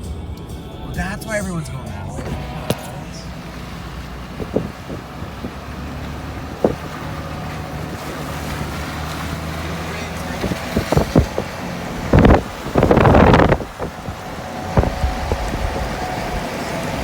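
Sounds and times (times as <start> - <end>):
car engine and road hum: 0.0 - 17.0
loud rush: 0.8 - 4.7.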